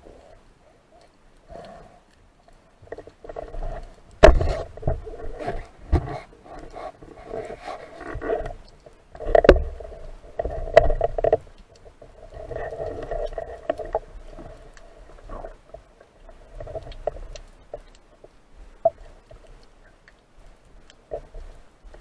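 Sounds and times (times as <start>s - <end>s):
water sloshing and splashing: 2.2s - 22.0s
sharp clicks and knocks: 4.2s - 5.0s.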